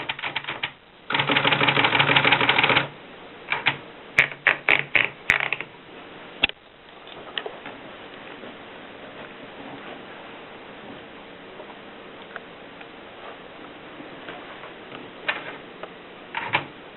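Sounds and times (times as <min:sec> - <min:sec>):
manual typewriter key strikes: 0:03.5 - 0:05.6.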